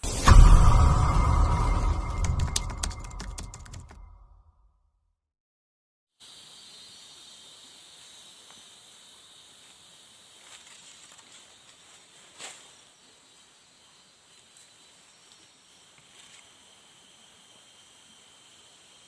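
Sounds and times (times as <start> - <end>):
insects shrilling: 6.2 - 19.0.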